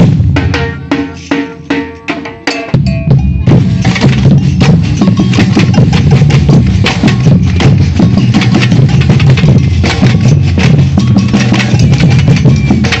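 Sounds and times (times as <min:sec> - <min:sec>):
samba percussion group playing: 0:00.0 - 0:13.0.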